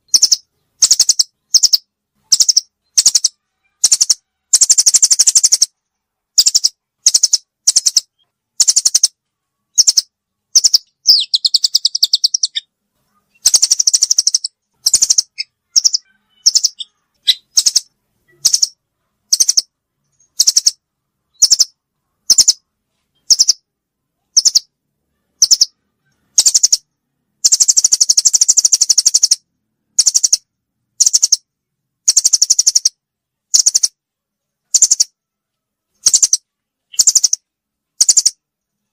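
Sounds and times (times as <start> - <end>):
songbird trilled chirps: 0.0 - 23.7, 24.3 - 34.0, 34.6 - 35.2, 36.0 - 38.9.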